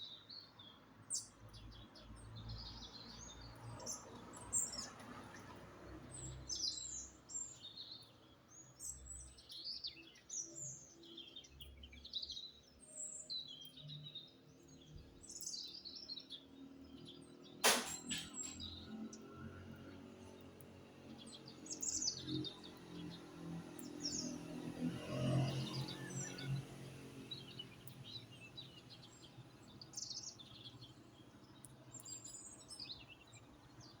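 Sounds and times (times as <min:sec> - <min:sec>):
songbirds chirping: 0:00.0 - 0:34.0.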